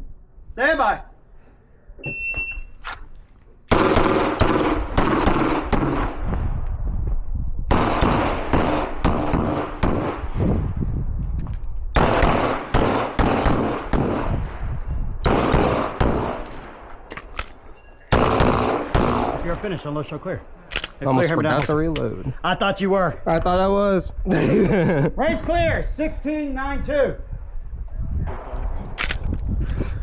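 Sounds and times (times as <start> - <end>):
rapid pistol shots: 3.7 - 6.3, 7.7 - 10.4, 12.0 - 14.6, 15.2 - 19.6.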